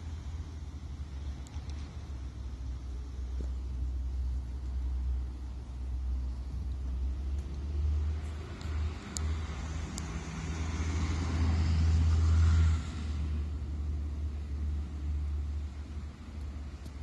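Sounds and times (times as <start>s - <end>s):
low traffic rumble: 0.0s - 17.0s
vehicle passing close by: 7.0s - 16.3s.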